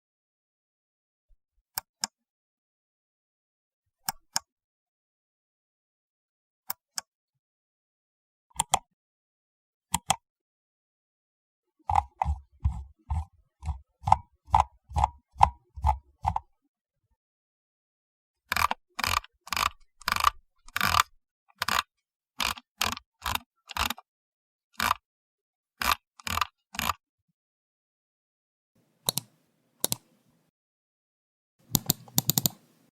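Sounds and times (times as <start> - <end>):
computer mouse clicking: 8.6 - 8.9, 9.9 - 10.2, 11.8 - 16.5, 18.5 - 24.0, 24.8 - 25.0, 25.8 - 27.0, 28.9 - 30.5, 31.6 - 32.9.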